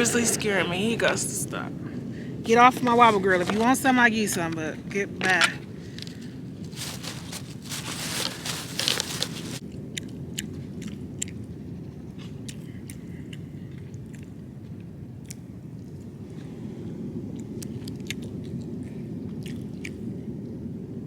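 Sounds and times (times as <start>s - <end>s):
low steady rumble: 0.0s - 21.0s
chewing and crunching: 5.2s - 16.5s, 17.3s - 20.2s.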